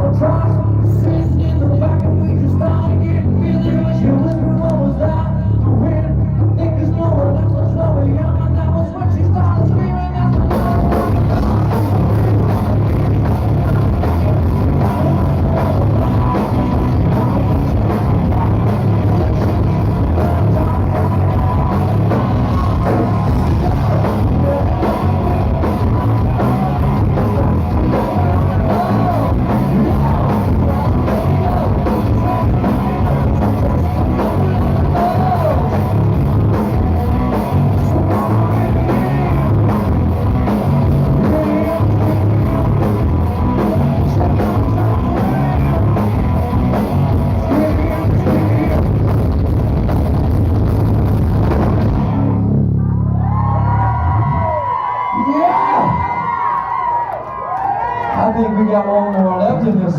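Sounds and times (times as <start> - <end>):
person singing: 0.0 - 49.1
rock band playing live: 0.0 - 57.0
drum kit: 10.2 - 52.6.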